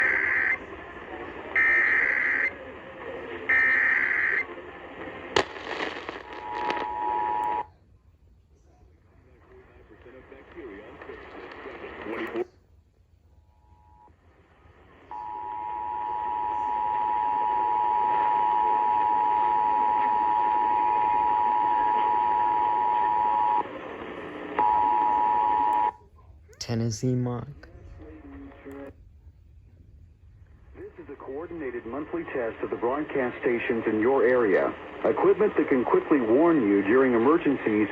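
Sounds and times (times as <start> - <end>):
static crack and crackling: 0.0 - 7.6, 9.4 - 12.5, 16.7 - 25.9, 30.4 - 37.9
radio hiss and static: 0.0 - 7.8, 8.6 - 12.7, 13.5 - 25.9, 26.6 - 29.0, 30.4 - 37.9.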